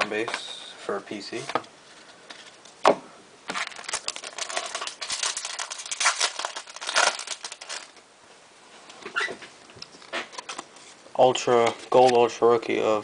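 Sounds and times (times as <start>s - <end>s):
wrapper tearing and crinkling: 3.5s - 8.0s.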